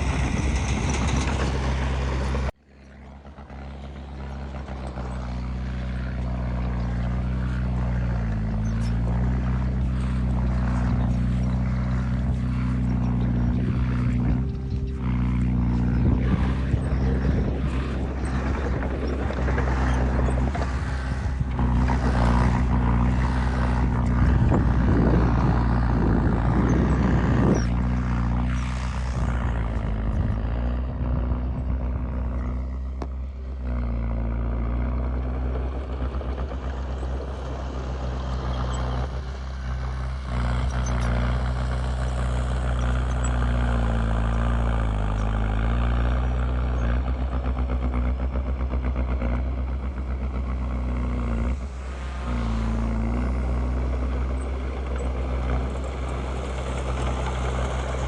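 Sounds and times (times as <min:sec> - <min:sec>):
bulldozer diesel engine under load: 0:00.0 - 0:58.0
clattering tracks and pushed soil: 0:00.0 - 0:58.0.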